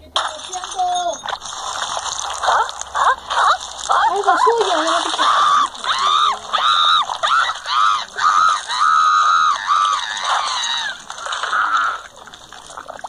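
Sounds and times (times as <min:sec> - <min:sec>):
cartoon voice screaming: 0:03.3 - 0:12.1.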